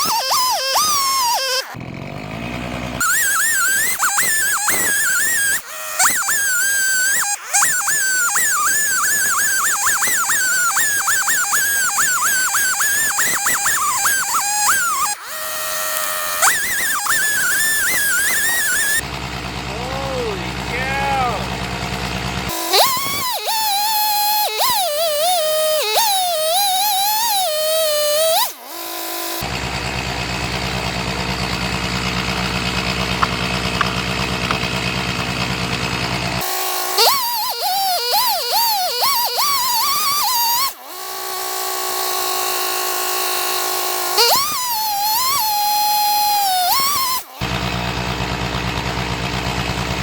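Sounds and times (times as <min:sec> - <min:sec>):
chainsaw engine idling: 0:00.2 - 0:50.0.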